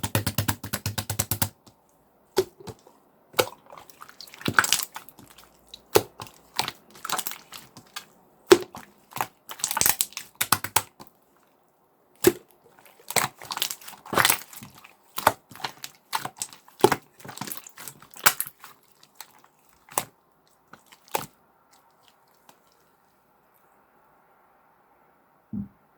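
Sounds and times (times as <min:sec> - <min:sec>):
sticky slime clicks and pops: 0:00.0 - 0:01.6, 0:08.5 - 0:11.0.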